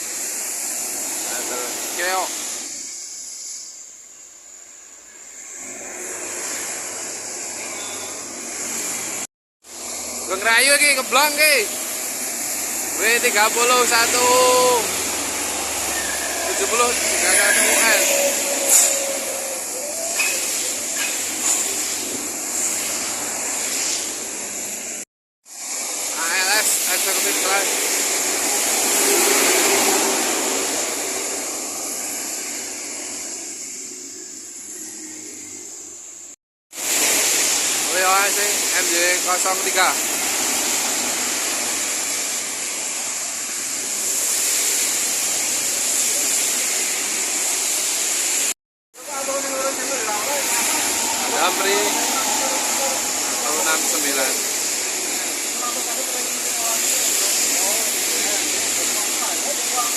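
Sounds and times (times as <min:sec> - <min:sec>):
tyres hissing on wet road: 0:00.0 - 0:59.9
traffic engine noise: 0:05.3 - 0:25.0, 0:49.0 - 0:59.9
vehicle passing: 0:49.6 - 0:55.2.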